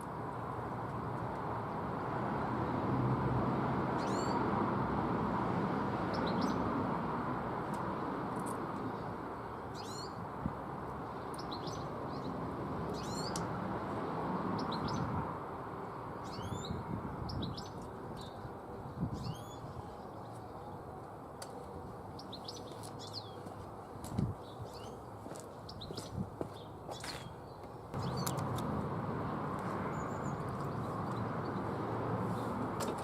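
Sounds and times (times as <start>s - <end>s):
small birds chirping: 4.0s - 4.4s, 6.1s - 6.6s, 8.4s - 10.2s, 11.1s - 13.5s, 14.4s - 15.1s, 15.9s - 28.7s, 29.3s - 33.0s.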